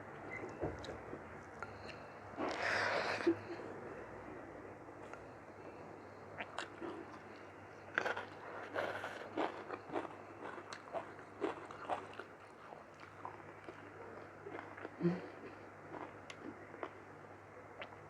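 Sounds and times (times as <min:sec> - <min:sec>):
person chewing food: 0:07.9 - 0:17.0.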